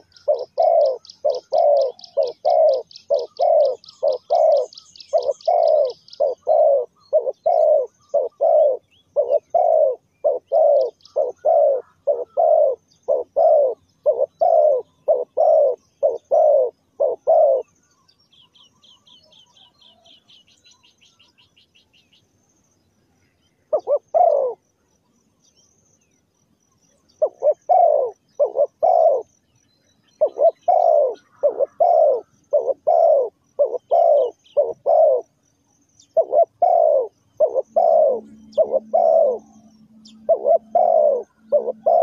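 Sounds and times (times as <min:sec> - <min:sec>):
dove cooing: 0:00.0 - 0:17.9, 0:23.7 - 0:24.6, 0:27.1 - 0:29.4, 0:30.2 - 0:35.4, 0:36.0 - 0:42.0
small bird trilling: 0:36.1 - 0:39.4, 0:40.0 - 0:42.0.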